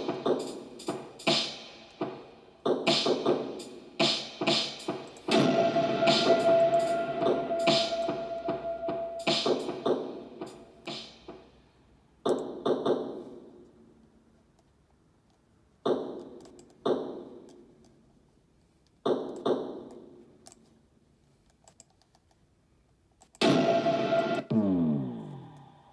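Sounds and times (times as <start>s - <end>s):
drum hits ringing out: 0.0s - 2.2s, 2.8s - 11.4s, 23.4s - 25.0s
sustained sound dropping in pitch: 5.3s - 9.5s.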